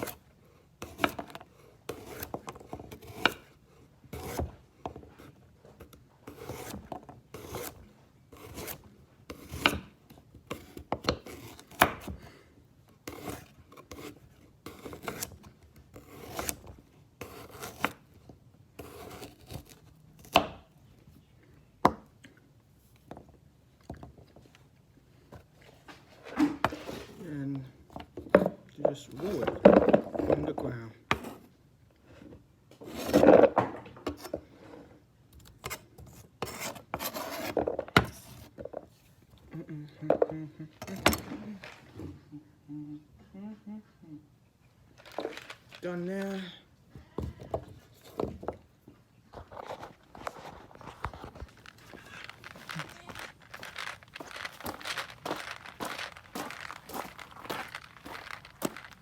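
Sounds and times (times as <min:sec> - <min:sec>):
scraping and rubbing: 0:45.0 - 0:45.9, 0:49.3 - 0:59.0
carrots crunching: 0:45.0 - 0:46.3, 0:49.6 - 0:59.0.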